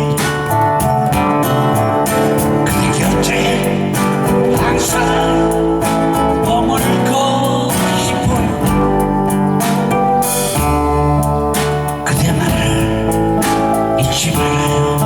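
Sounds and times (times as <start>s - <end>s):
bass line: 0.0s - 15.0s
guitar: 0.0s - 15.0s
steady drum beat: 0.0s - 15.0s.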